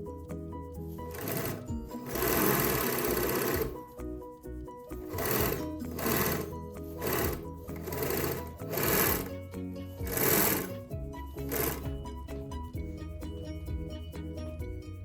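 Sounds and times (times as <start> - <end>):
background music: 0.0 - 15.0
overlock sewing machine running: 1.1 - 3.9, 5.0 - 9.4, 10.0 - 10.8, 11.4 - 11.9.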